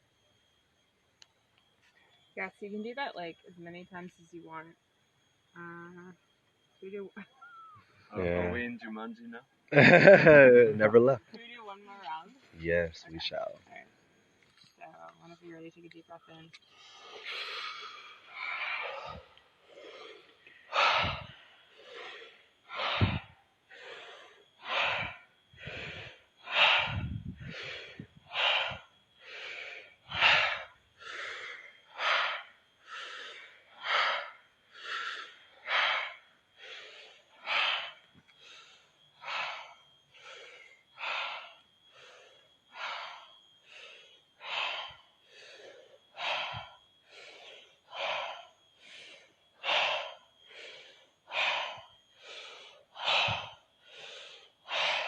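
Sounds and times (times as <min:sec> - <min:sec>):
deep forceful breathing: 0:16.7 - 0:55.0.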